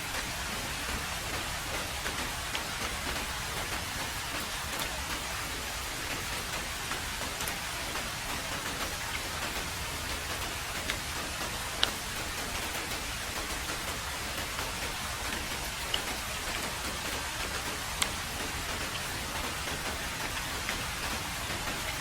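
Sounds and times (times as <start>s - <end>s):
heavy rain hissing: 0.0s - 22.0s
single raindrops ticking: 6.1s - 22.0s.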